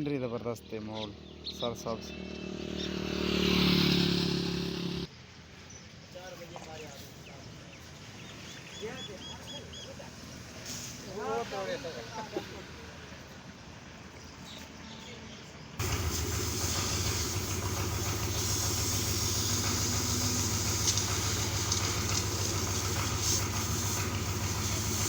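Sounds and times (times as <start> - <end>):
motor humming and hissing: 15.8 - 25.0.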